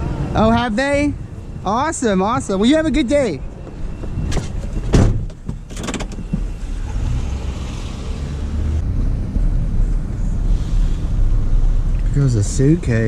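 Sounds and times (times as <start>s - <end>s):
road noise: 0.0s - 13.0s
clunks and clicks: 4.3s - 6.5s.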